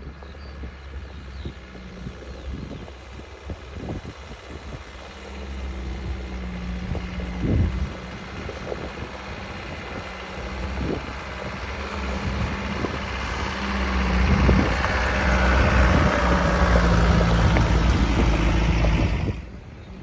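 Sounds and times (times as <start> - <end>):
off-road vehicle engine under load: 0.0 - 20.0.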